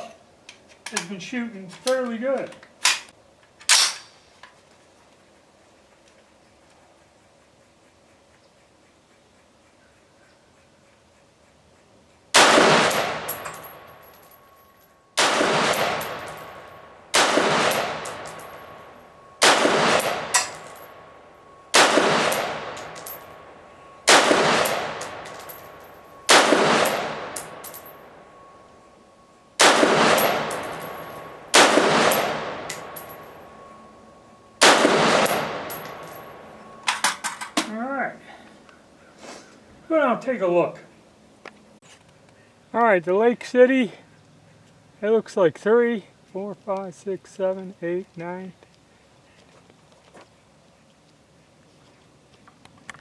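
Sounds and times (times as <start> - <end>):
rifle shots with echo: 12.4 - 13.9, 15.2 - 18.7, 19.4 - 20.8, 21.7 - 23.3, 24.1 - 27.9, 29.6 - 33.3, 34.6 - 36.2.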